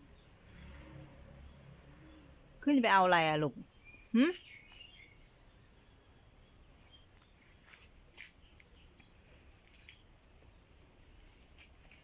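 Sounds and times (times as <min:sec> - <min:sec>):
faint chirps and clicks: 0:03.6 - 0:05.2, 0:06.8 - 0:10.6.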